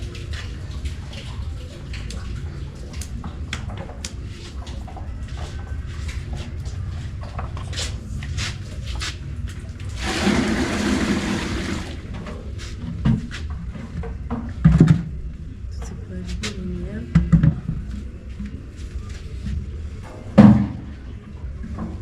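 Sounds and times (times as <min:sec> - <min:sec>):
water rushing out: 0:10.0 - 0:12.1.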